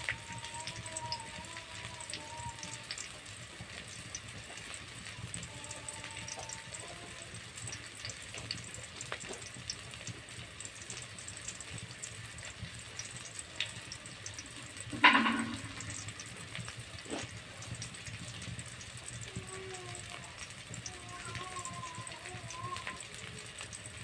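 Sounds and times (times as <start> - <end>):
food cooking hiss: 0.0 - 24.0.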